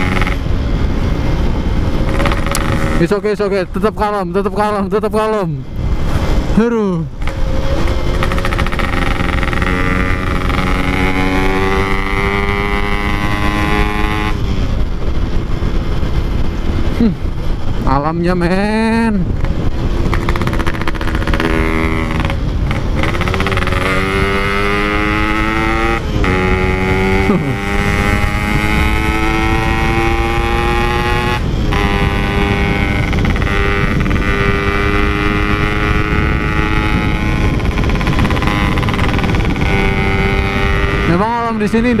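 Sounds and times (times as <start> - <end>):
two-stroke motorcycle engine: 2.0 - 3.2, 7.2 - 14.4, 19.4 - 42.0.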